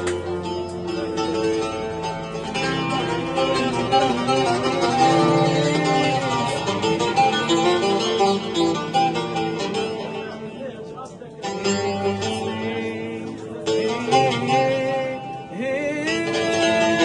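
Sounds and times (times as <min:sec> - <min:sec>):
plucked string instruments: 0:00.0 - 0:17.0.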